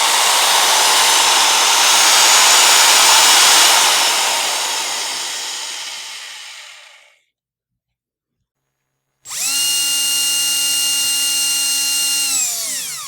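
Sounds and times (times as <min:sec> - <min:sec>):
power drill whirring: 0:00.0 - 0:07.1, 0:09.3 - 0:13.0.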